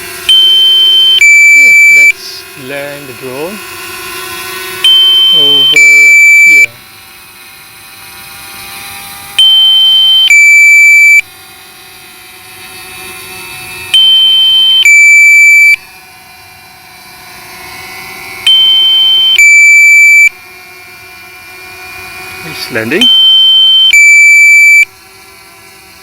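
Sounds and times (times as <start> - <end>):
drone propellers humming: 0.0 - 26.0
two-tone warning beep: 0.3 - 2.2, 4.9 - 6.8, 9.4 - 11.3, 14.0 - 15.8, 18.5 - 20.4, 22.6 - 24.9.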